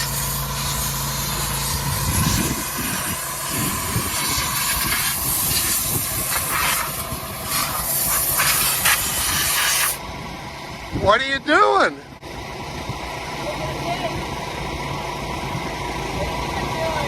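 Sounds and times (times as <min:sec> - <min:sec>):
high-pressure jet hissing: 0:00.0 - 0:10.0.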